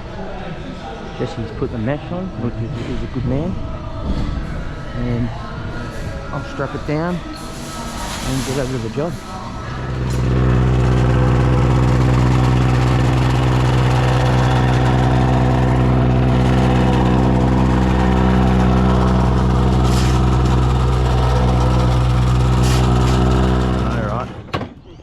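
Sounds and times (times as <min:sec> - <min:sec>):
truck engine running: 0:06.5 - 0:24.5.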